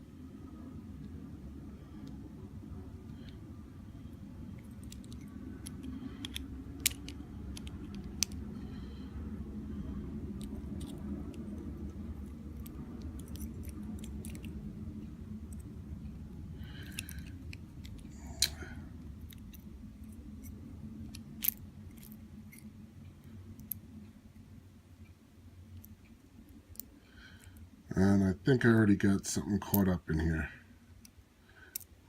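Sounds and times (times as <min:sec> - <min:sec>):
steady low hum: 0:00.0 - 0:32.0
padlock parts clicking and scraping: 0:04.5 - 0:08.6, 0:10.3 - 0:14.6, 0:16.6 - 0:18.6, 0:19.2 - 0:22.7, 0:31.7 - 0:32.0.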